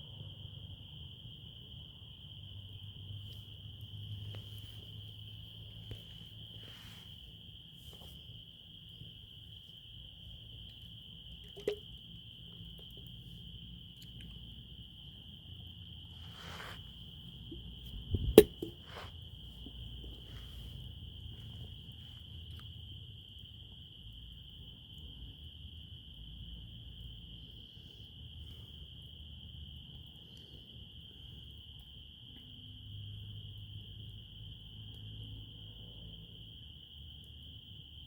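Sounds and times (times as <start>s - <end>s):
insects trilling: 0.0s - 38.0s.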